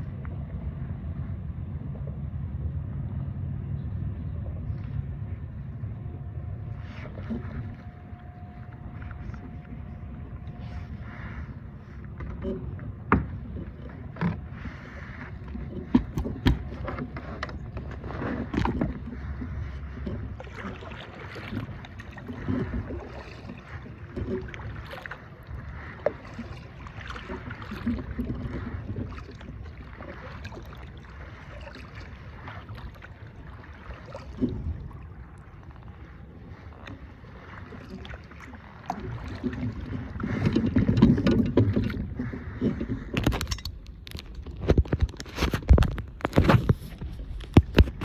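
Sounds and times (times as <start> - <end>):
water moving around kayak: 0.0 - 48.0
knocks against hull: 12.2 - 14.5, 15.5 - 25.2, 39.2 - 48.0.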